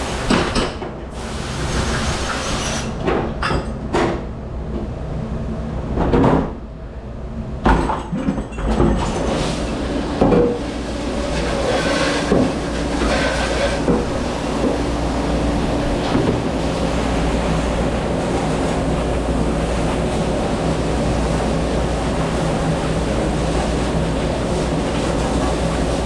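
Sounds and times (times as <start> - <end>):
dishes and trays clattering: 7.7 - 9.5
machine hum: 9.5 - 26.0.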